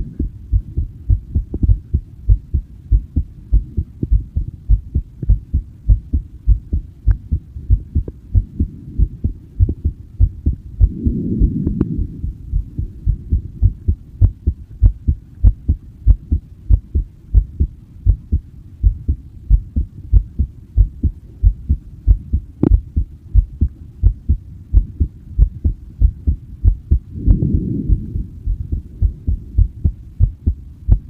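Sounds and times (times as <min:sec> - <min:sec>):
heartbeat thumps: 0:00.0 - 0:31.0
low rumble: 0:00.0 - 0:31.0.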